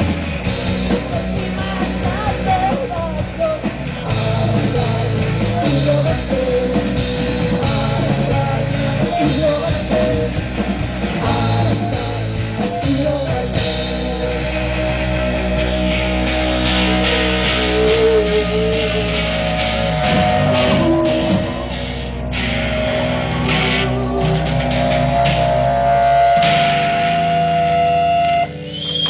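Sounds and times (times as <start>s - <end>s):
rock band playing: 0.0s - 29.0s.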